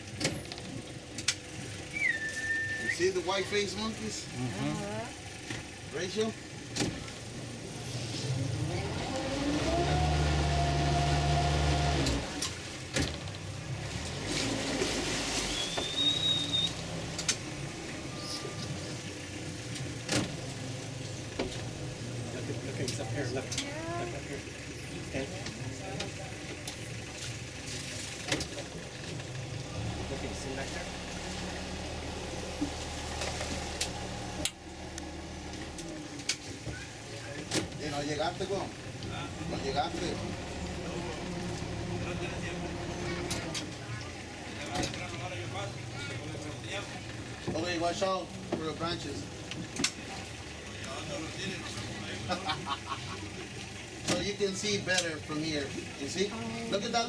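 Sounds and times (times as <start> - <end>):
outboard motor revving: 1.6 - 57.0
brief high whistle: 1.9 - 3.1, 15.5 - 16.8.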